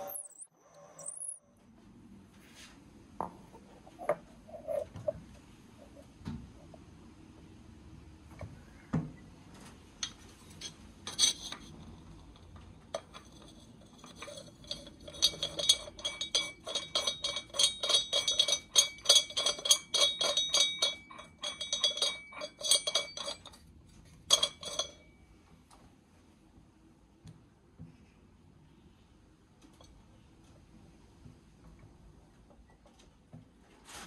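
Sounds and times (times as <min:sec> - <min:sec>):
metal clinking and ringing: 0:00.0 - 0:01.4, 0:10.0 - 0:11.7, 0:13.0 - 0:23.6, 0:24.3 - 0:25.3.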